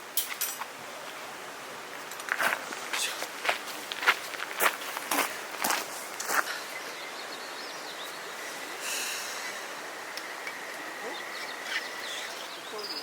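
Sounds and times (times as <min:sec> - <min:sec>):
steady hiss: 0:00.0 - 0:13.0
faint chirps: 0:06.5 - 0:13.0.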